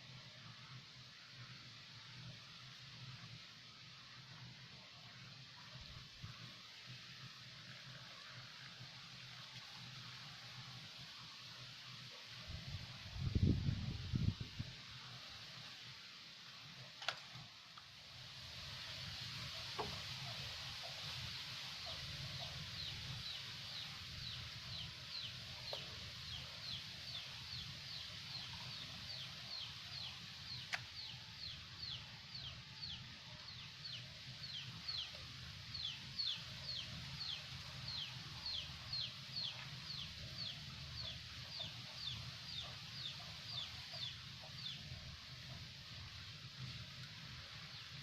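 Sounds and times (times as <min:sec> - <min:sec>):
bird chirping: 0:21.8 - 0:45.6.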